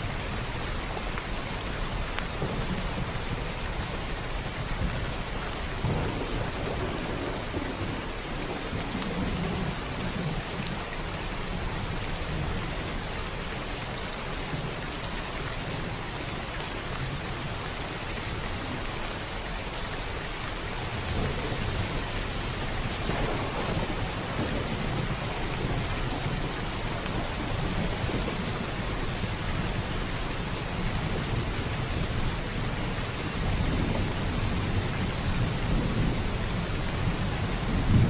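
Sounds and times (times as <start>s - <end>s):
heavy rain drumming on a roof: 0.0s - 38.0s
thunder rumbling: 0.9s - 13.7s, 20.8s - 38.0s.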